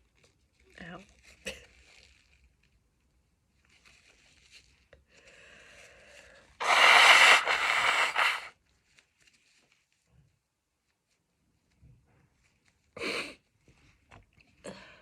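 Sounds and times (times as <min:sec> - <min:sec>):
faint sniffs and breaths: 0:05.1 - 0:08.5
woman sneezing: 0:06.6 - 0:08.5.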